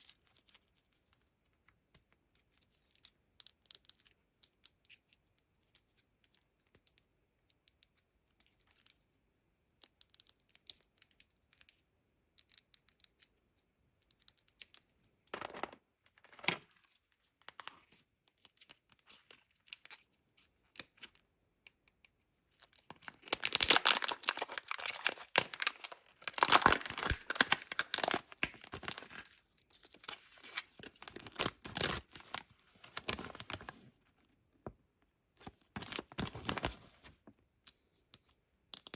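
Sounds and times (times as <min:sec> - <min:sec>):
wrapper rustling: 0:23.1 - 0:29.3, 0:30.8 - 0:33.8, 0:35.8 - 0:37.1
wrapper tearing and crinkling: 0:23.1 - 0:29.3, 0:31.0 - 0:33.7.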